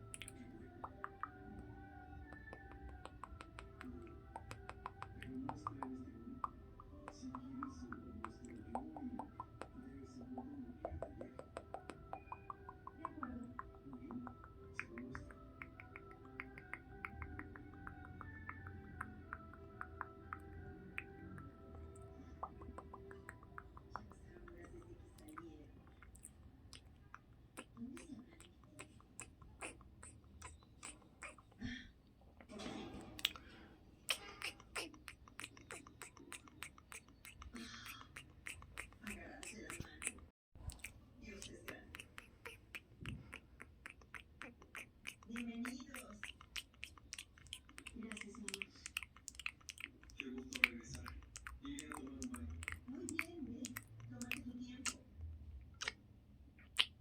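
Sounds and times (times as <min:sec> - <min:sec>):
chewing and wet mouth sounds: 0:00.0 - 0:31.8, 0:33.1 - 0:55.0, 0:55.7 - 0:57.0.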